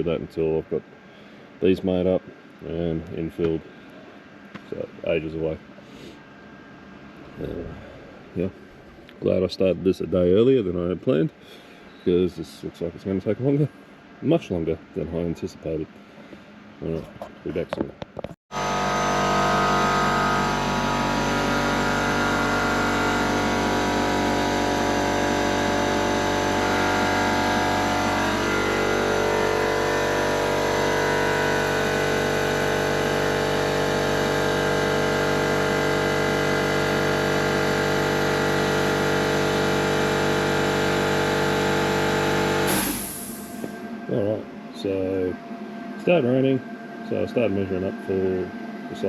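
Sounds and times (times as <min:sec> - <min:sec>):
loud machine drone: 0:18.5 - 0:49.0.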